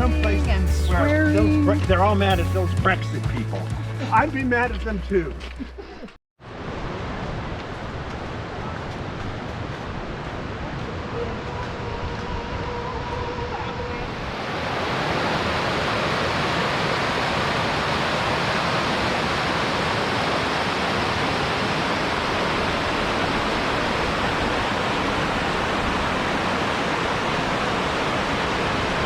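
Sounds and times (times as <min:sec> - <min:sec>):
creek water rushing: 0:06.4 - 0:29.0.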